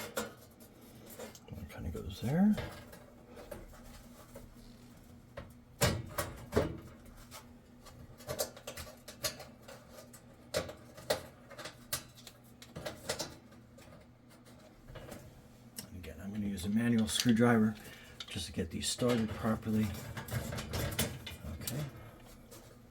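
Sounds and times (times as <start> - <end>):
metal clanks and clicks: 16.9 - 22.0.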